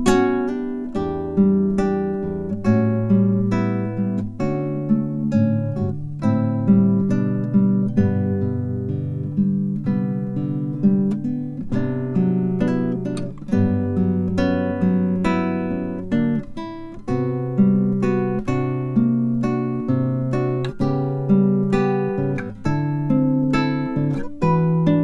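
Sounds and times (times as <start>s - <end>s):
acoustic guitar music: 0.0s - 25.0s.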